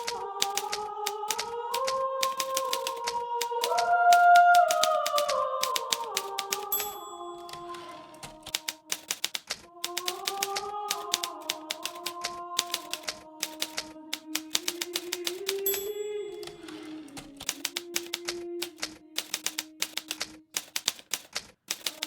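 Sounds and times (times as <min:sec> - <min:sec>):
typewriter keystrokes clacking: 0:00.0 - 0:22.0
typewriter bell ringing: 0:02.2 - 0:03.0, 0:04.5 - 0:09.4, 0:14.4 - 0:18.1.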